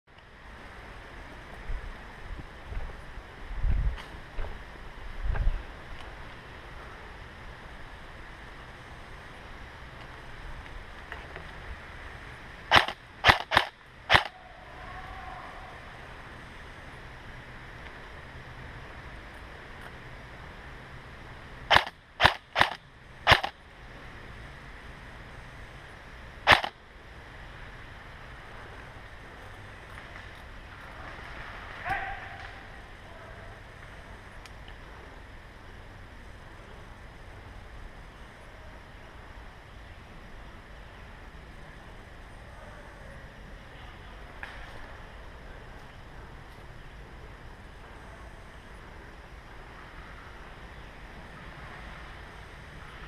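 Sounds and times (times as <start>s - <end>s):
airsoft gun shots: 12.7s - 14.4s, 21.7s - 23.6s, 26.5s - 26.8s.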